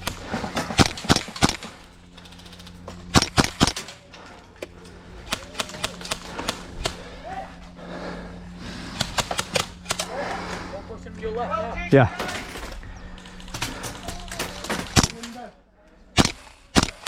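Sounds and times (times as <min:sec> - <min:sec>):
airsoft rifle shots: 0:00.0 - 0:01.8, 0:02.4 - 0:04.0, 0:08.9 - 0:10.2, 0:13.2 - 0:15.4, 0:16.2 - 0:17.0.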